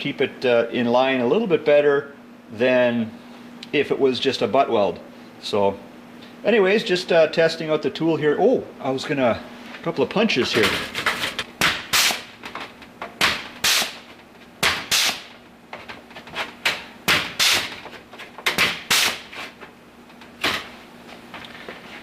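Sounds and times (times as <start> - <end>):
air tool punching sheet metal: 10.6 - 12.4, 13.2 - 15.4, 16.4 - 19.6.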